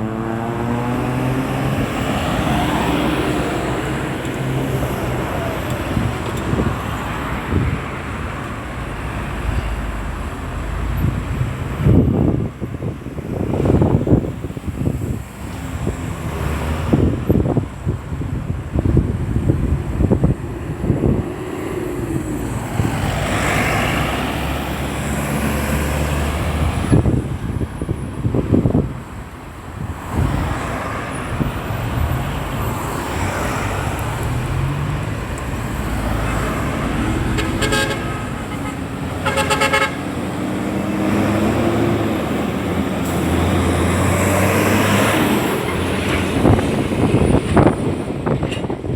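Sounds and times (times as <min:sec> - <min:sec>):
heavy vehicle engine: 0:00.0 - 0:48.9
road traffic passing: 0:00.0 - 0:48.9
wind buffeting microphone: 0:00.0 - 0:48.9
car horn tooting: 0:37.3 - 0:40.1.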